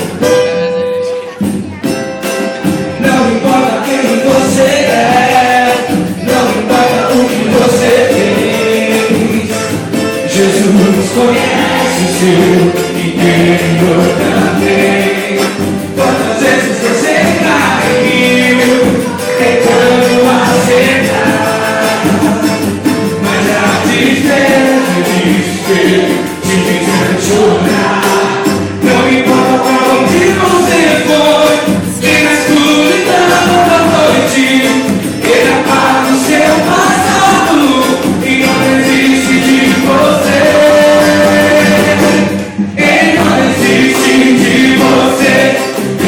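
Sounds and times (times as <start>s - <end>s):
fast hand percussion: 0.0s - 46.0s
voices singing together: 2.8s - 46.0s.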